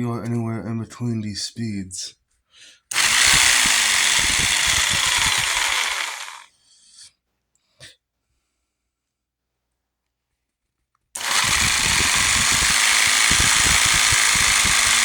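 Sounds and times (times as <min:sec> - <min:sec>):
jigsaw motor and blade running: 0:02.9 - 0:06.5, 0:11.2 - 0:15.0.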